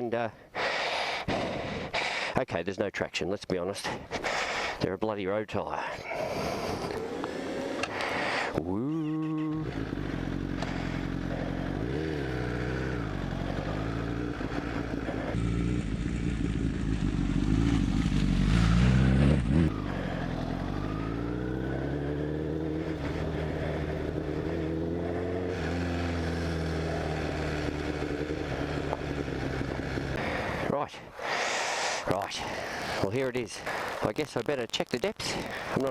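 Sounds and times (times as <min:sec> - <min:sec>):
motorcycle engine revving: 0:06.7 - 0:30.6.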